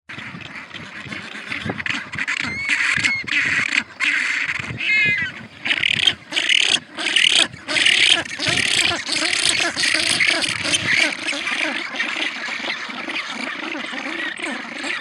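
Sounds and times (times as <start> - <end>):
penguins squawking: 0.1 - 15.0
quick stuttering call: 0.8 - 15.0.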